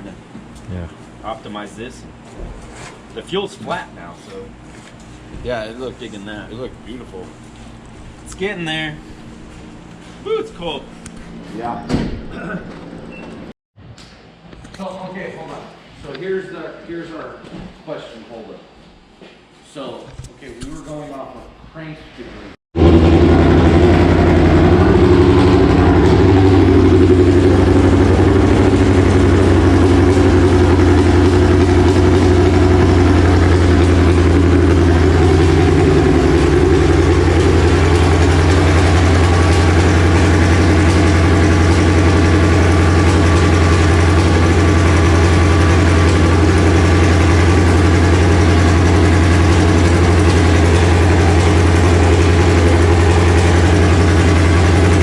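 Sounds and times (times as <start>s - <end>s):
car engine idling: 22.8s - 55.0s.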